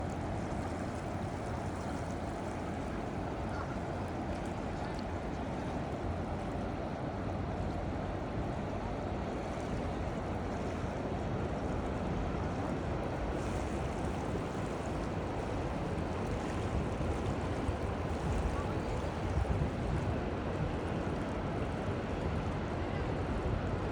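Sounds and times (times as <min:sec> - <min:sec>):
river water flowing: 0:00.0 - 0:23.9.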